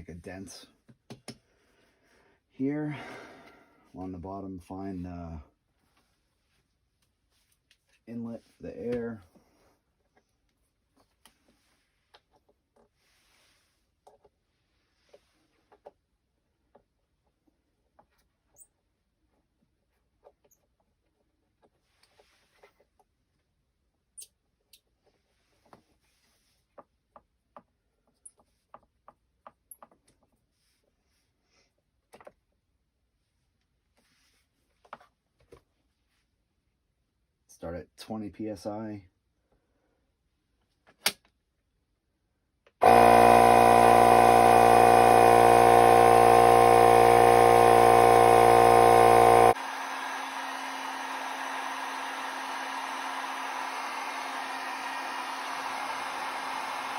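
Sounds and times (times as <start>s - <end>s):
electric air pump buzzing: 42.8s - 56.9s.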